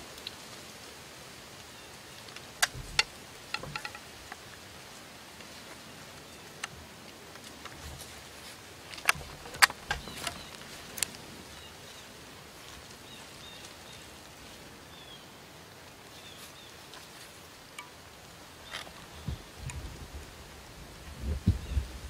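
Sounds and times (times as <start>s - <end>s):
low steady hiss: 0.0s - 22.0s
sharp clicks: 2.6s - 4.1s, 9.0s - 11.2s.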